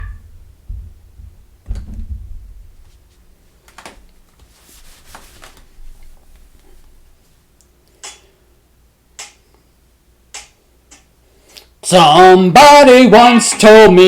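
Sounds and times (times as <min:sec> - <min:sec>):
low thumps: 0:00.0 - 0:03.0.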